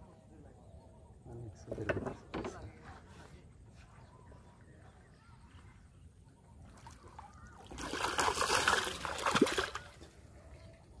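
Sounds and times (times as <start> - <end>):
water splashing and sloshing: 4.3 - 11.0.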